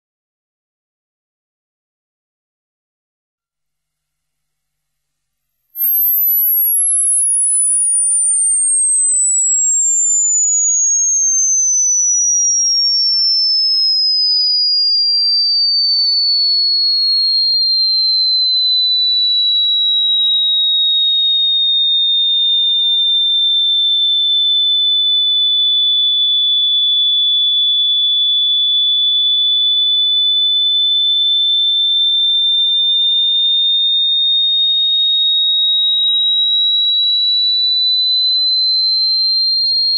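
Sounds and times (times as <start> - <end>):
electronic sine-wave tone sweeping: 5.7 - 22.4, 34.7 - 39.9.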